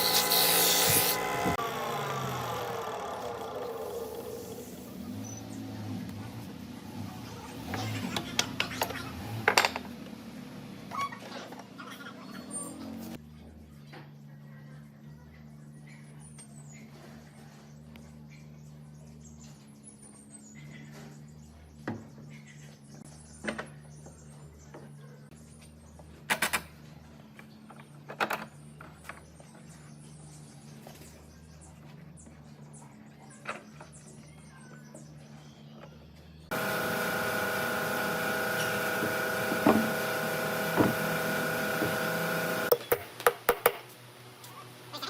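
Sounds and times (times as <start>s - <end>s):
small electric motor running: 0.0s - 5.1s, 36.5s - 42.8s.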